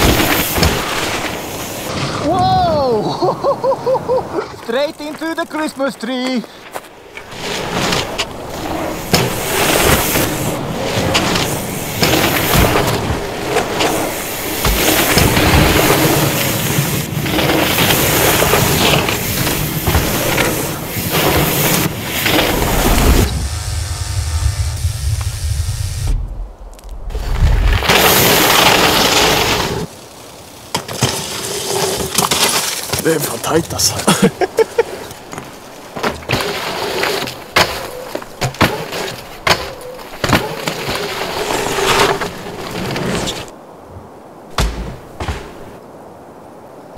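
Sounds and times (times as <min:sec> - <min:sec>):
bike tyres on loose dirt: 0:00.0 - 0:46.1
bike chain and suspension clattering: 0:07.1 - 0:25.2
wind on microphone: 0:22.0 - 0:27.9.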